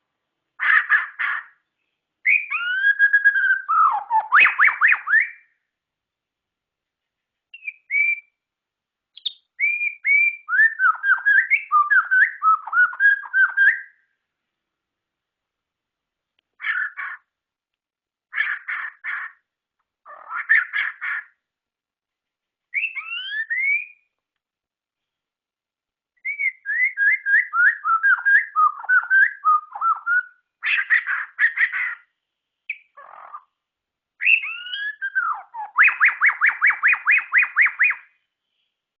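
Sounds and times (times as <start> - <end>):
bird singing whistles and chatters: 2.2 - 5.5, 7.5 - 8.4, 9.1 - 14.0, 22.7 - 24.1, 26.2 - 33.5, 34.2 - 38.2.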